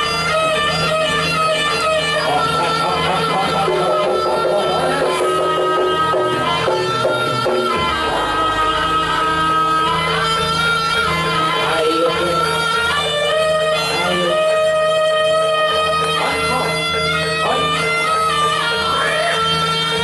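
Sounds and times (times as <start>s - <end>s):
steady low drone: 0.0s - 14.7s
pitch-bending melody line: 0.6s - 19.1s.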